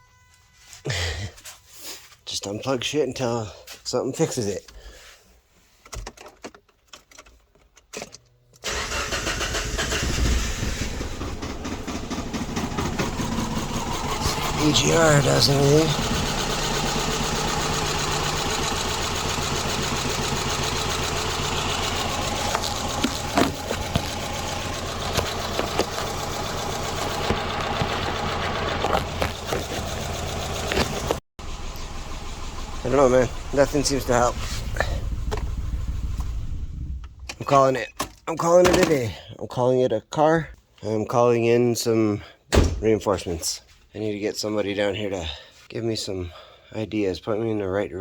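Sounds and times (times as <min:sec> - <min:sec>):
car engine idling rough: 0:08.7 - 0:37.4.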